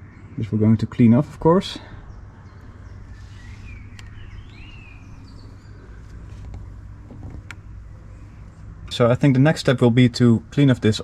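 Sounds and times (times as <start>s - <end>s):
birds calling: 0.0s - 11.0s
steady low hum: 0.0s - 11.0s
sharp clicks: 3.9s - 4.6s.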